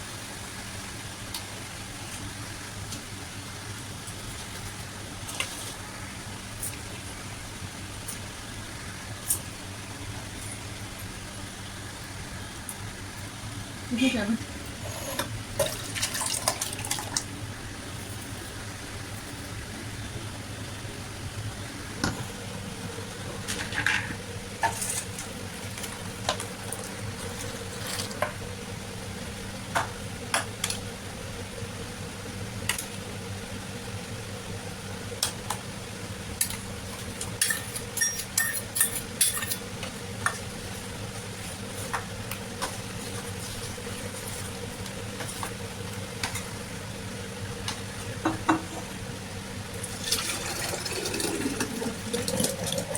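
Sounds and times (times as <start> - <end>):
steady low hum: 0.0 - 52.9
spoon clinking against vessel: 37.4 - 39.5.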